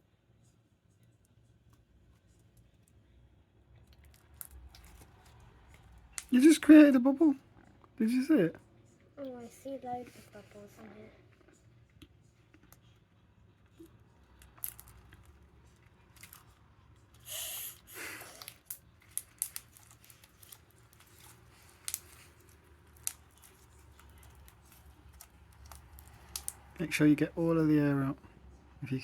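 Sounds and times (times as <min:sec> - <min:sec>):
slime clicks and squelches: 0:18.4 - 0:26.7.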